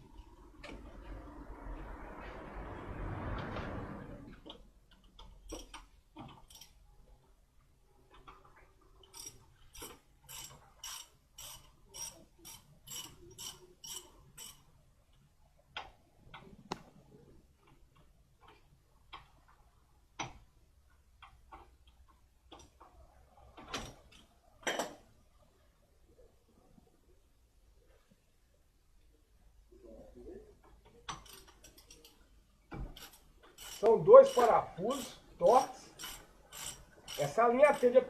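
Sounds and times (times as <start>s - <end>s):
ratchet wrench clicking: 9.1s - 14.6s, 33.0s - 35.2s, 36.0s - 38.0s.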